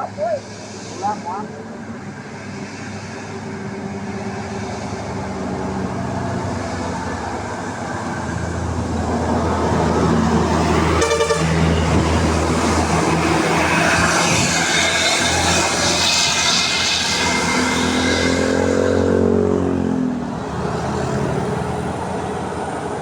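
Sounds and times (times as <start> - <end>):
bus engine running: 0.0 - 23.0
bus horn blast: 10.6 - 12.2.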